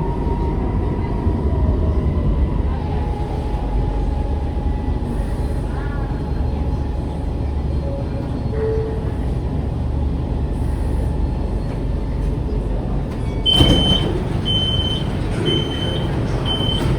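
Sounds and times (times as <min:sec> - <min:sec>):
train interior rumble: 0:00.0 - 0:16.9
door warning beeps: 0:13.2 - 0:16.9.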